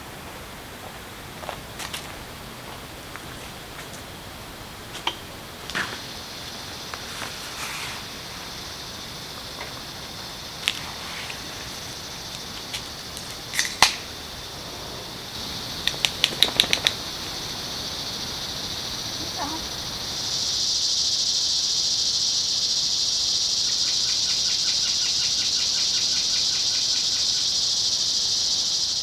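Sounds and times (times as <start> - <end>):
high-pitched insect chorus: 0.0 - 29.0
sharp clicks: 15.8 - 17.2.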